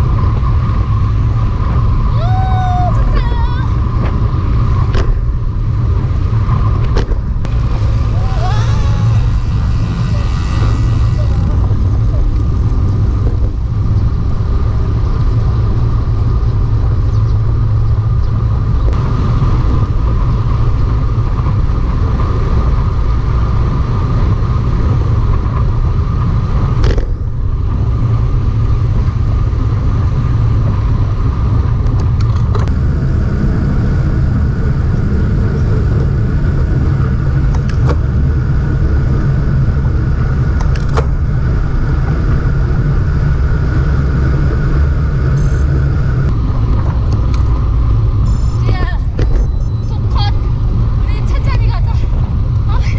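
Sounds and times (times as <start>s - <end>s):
bicycle road noise: 0.0s - 52.9s
wind rumble on microphone: 0.0s - 52.9s
steady hum: 5.4s - 16.2s, 32.6s - 51.4s.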